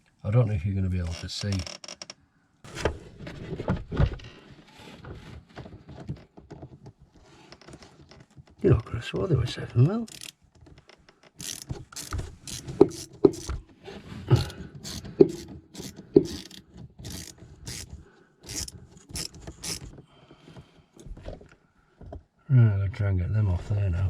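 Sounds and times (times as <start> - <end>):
metallic clicks of hand tools: 10.1 - 10.4, 11.4 - 13.6, 14.4 - 19.9.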